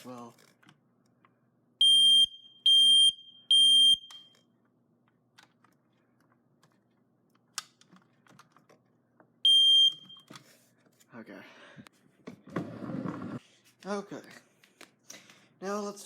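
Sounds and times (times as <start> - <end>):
smoke detector alarm beeps: 1.8 - 4.3, 9.4 - 10.3.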